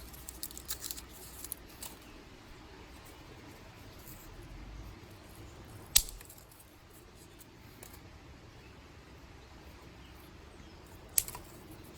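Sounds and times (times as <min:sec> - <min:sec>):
dry stick snapping: 0:05.9 - 0:06.4, 0:11.1 - 0:11.9.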